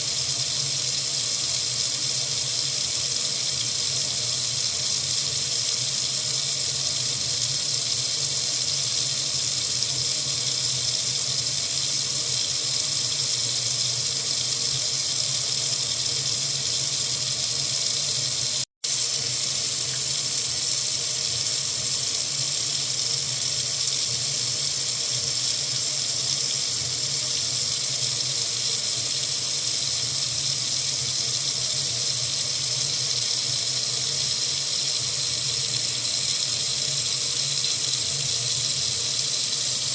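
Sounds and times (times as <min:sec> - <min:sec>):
faucet water running into sink: 0:00.0 - 0:39.9.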